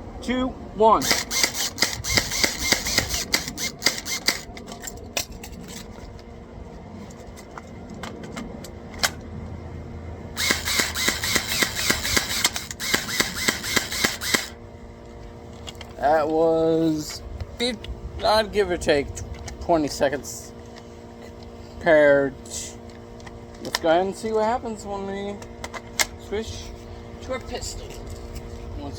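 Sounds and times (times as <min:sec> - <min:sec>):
airsoft gun rapid firing: 0:01.0 - 0:04.5, 0:10.4 - 0:14.5.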